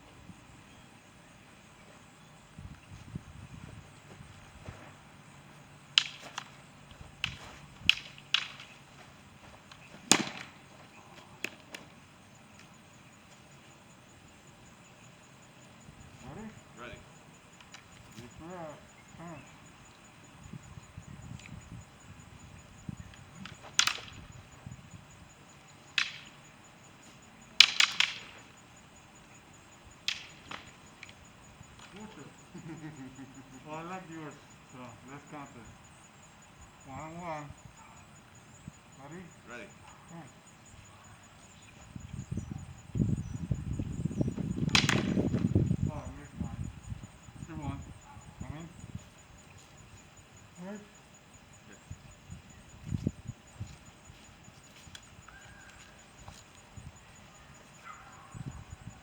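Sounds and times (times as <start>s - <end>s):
practice swords clacking: 5.9s - 9.0s, 9.6s - 10.6s, 23.4s - 24.3s, 25.8s - 26.4s, 27.6s - 28.6s, 30.0s - 31.2s, 44.7s - 45.2s.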